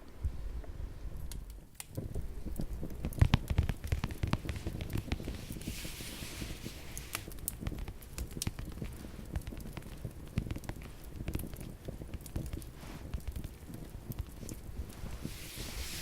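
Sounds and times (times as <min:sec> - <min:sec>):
wood fire crackling: 0:00.0 - 0:16.0
fire hiss: 0:01.9 - 0:16.0.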